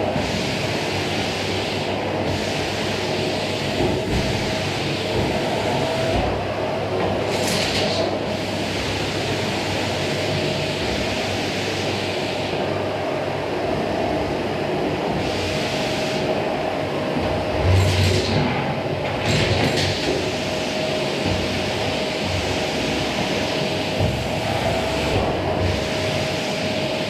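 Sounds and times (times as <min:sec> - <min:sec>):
vacuum cleaner running: 0:00.0 - 0:27.0
vacuum nozzle air rushes: 0:20.2 - 0:27.0.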